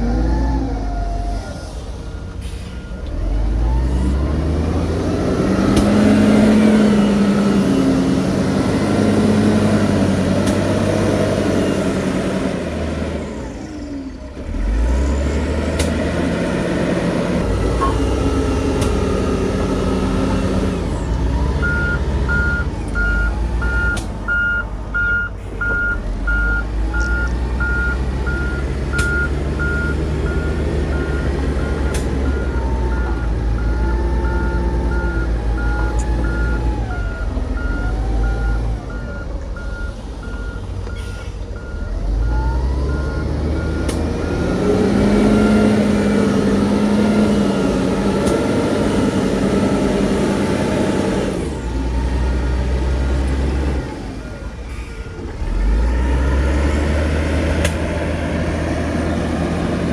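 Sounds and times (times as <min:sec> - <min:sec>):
diesel engine under load: 0:00.0 - 0:59.9
reversing alarm beeping: 0:17.7 - 0:48.0.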